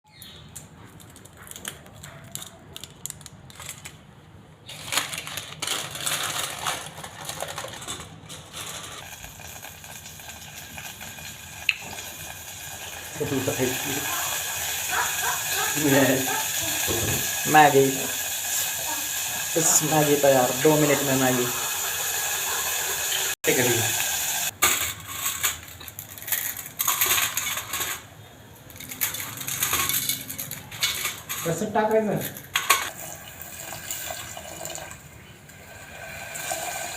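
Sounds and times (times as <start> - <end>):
steady cooking hiss: 9.0 - 24.7, 32.9 - 36.9
metal utensils scraping a pan: 24.6 - 28.1, 28.8 - 33.2.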